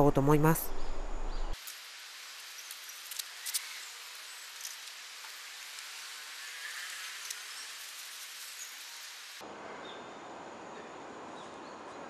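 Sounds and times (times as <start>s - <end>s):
background hiss: 1.5s - 9.7s.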